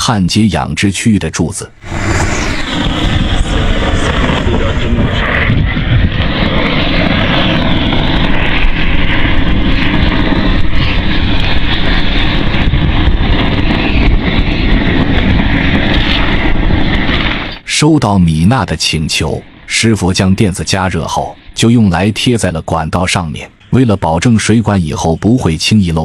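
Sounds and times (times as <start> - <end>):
gas torch burning: 1.7 - 17.6.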